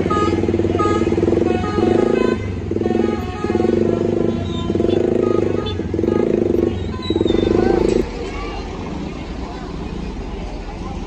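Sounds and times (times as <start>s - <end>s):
bus musical horn playing a tune: 0.0s - 8.0s
bus engine running: 0.0s - 11.0s.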